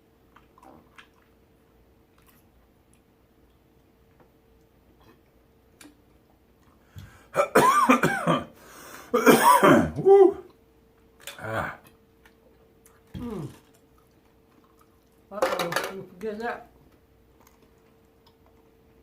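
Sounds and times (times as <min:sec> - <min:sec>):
person clearing throat: 0:07.4 - 0:08.6, 0:09.2 - 0:10.5, 0:11.3 - 0:11.9, 0:13.2 - 0:13.6
person coughing hard: 0:07.4 - 0:10.4.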